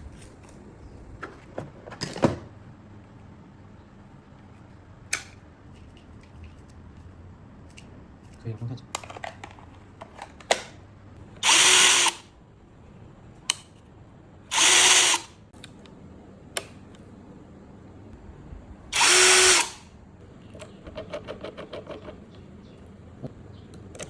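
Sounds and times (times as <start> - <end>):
cordless impact drill bursts: 11.4 - 12.3, 14.5 - 15.3, 19.0 - 19.8.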